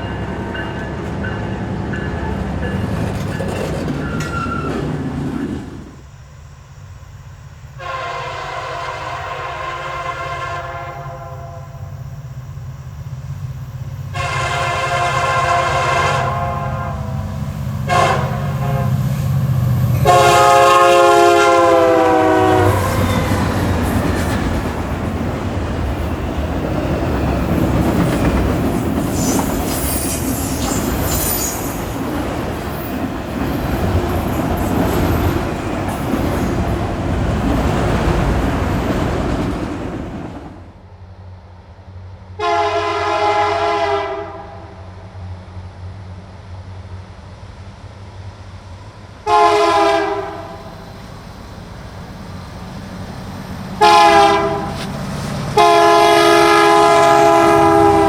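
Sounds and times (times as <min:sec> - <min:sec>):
train wheels clattering over rails: 0:00.0 - 0:06.0, 0:22.2 - 0:40.7
locomotive air horn: 0:07.8 - 0:12.0, 0:14.1 - 0:23.6, 0:42.4 - 0:44.9, 0:49.2 - 0:50.8, 0:53.8 - 0:58.0.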